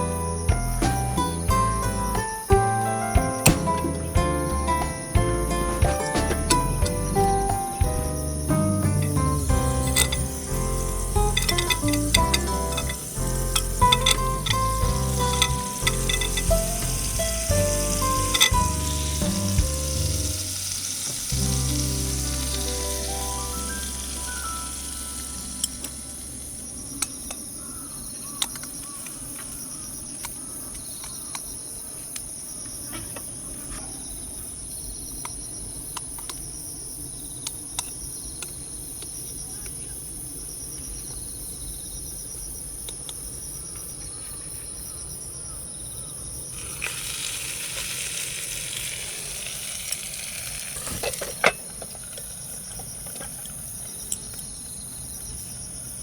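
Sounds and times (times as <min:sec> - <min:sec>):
sandwich maker sizzling: 0:00.0 - 0:26.9, 0:46.6 - 0:52.6
crickets trilling: 0:00.0 - 0:56.0
sharp knock: 0:00.8 - 0:07.2
cooking gear clicks and knocks: 0:00.9 - 0:20.4.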